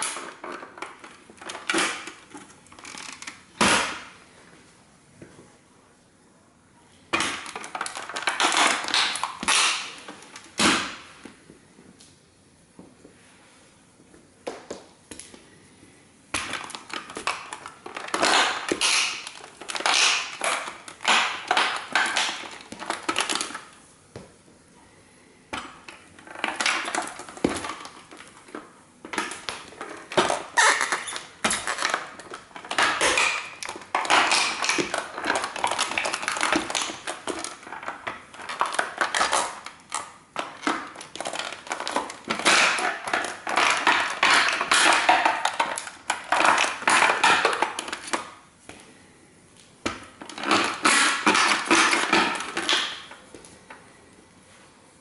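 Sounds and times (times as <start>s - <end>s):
toy car crunching underfoot: 26.2s - 48.4s, 50.2s - 53.2s.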